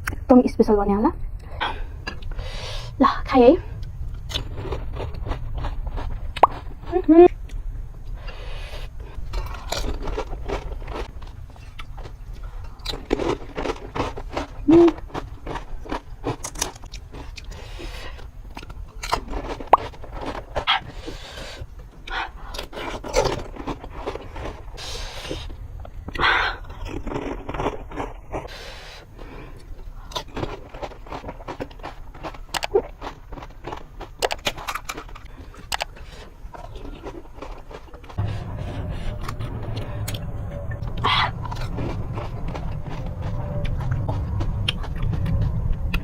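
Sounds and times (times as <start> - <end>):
chewing and wet mouth sounds: 3.7 - 46.0
crisp shells crunching in mouth: 3.8 - 7.6, 9.1 - 21.0, 22.4 - 38.3.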